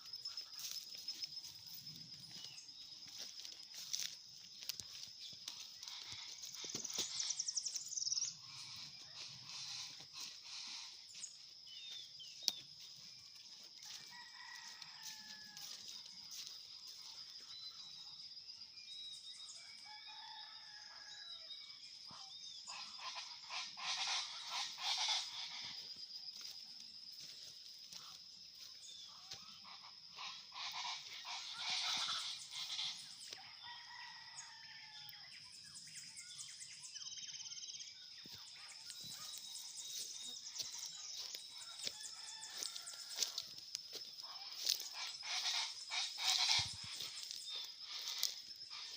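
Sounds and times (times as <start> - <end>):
small birds chirping: 0.0 - 14.6, 35.8 - 48.9
rooster crowing: 13.8 - 15.9, 19.8 - 21.5, 33.5 - 35.2, 41.6 - 43.6.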